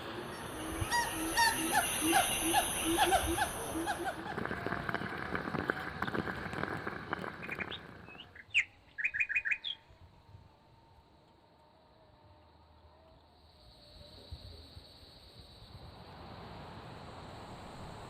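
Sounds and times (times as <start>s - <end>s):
crackly noise: 0.0s - 8.7s
bird chirps: 0.3s - 4.2s, 7.4s - 9.9s.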